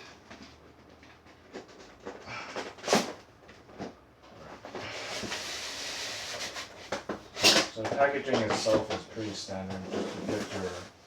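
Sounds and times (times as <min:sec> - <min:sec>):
cardboard scraping against cardboard: 0:09.8 - 0:10.9.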